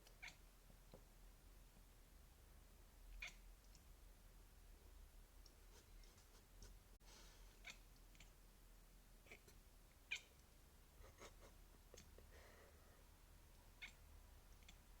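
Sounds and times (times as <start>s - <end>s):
cat chattering: 9.2s - 10.4s, 13.7s - 14.0s.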